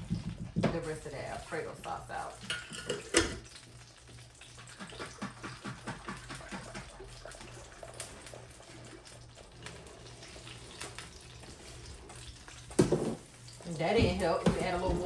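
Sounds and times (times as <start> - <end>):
liquid glugging: 2.1 - 15.0.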